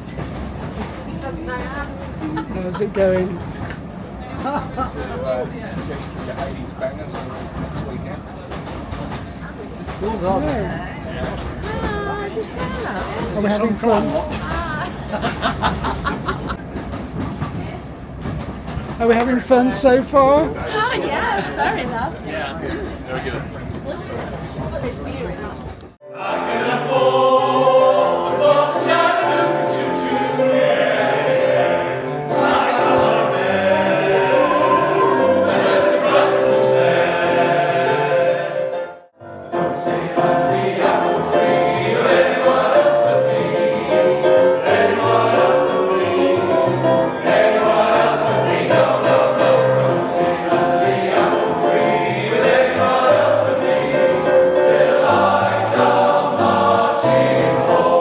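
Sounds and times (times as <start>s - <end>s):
male choir singing: 26.0s - 58.0s.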